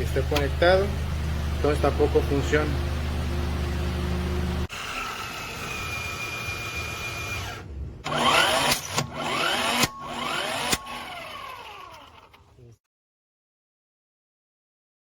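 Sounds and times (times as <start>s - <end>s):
small electric motor whirring: 4.7s - 12.5s.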